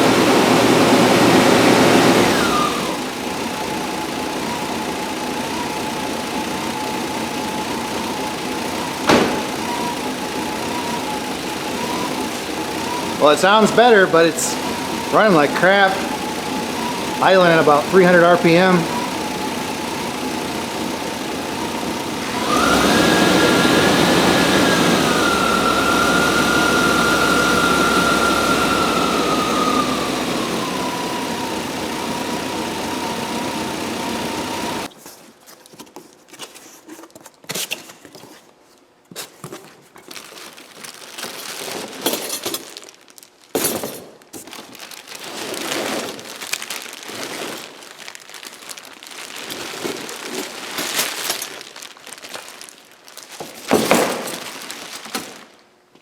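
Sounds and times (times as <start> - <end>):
engine idling rough and revving: 0.0 - 34.9
steady engine whine: 0.0 - 34.9.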